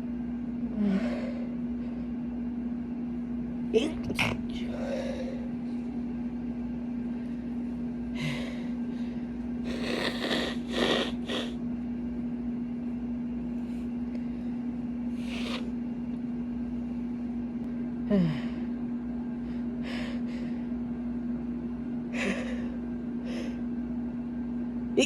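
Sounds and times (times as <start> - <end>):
air conditioner humming: 0.0 - 25.0
person breathing and sniffing: 15.2 - 15.7.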